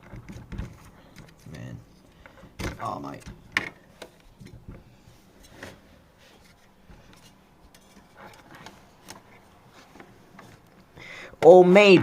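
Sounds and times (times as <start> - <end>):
clicks and rubbing of computer parts: 0.0 - 11.6.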